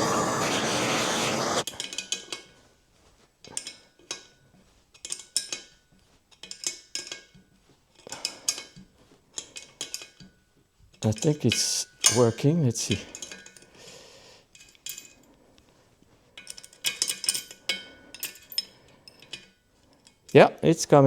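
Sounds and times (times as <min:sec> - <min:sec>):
loud hiss: 0:00.0 - 0:01.7.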